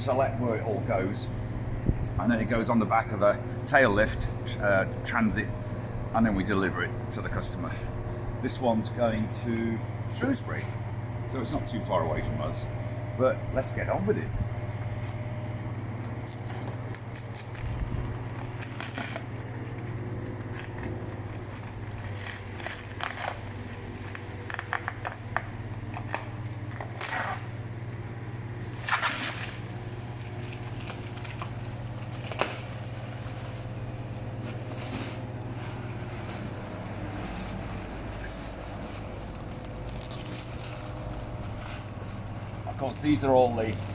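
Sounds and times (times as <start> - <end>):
low hum: 0.0 - 43.9
wrapping rustling: 14.5 - 43.9
packaging being cut: 16.1 - 33.7.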